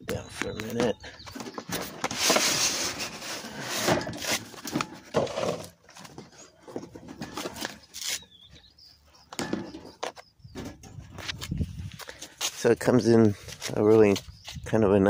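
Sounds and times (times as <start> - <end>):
tool case scraping and rubbing: 0.8 - 8.5.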